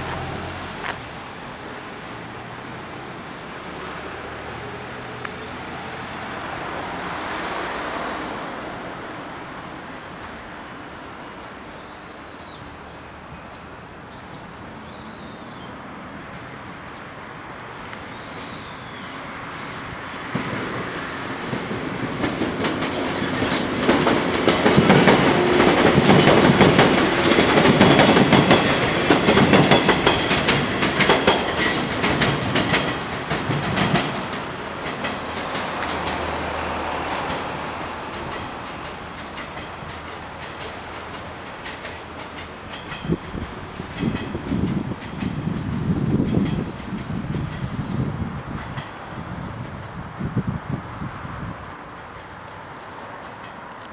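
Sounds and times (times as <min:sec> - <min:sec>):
high wheel squeals: 0:00.0 - 0:01.0, 0:17.4 - 0:27.0, 0:29.7 - 0:34.1, 0:35.0 - 0:42.3
train wheels clattering over rail joints: 0:00.0 - 0:01.2, 0:17.8 - 0:49.8.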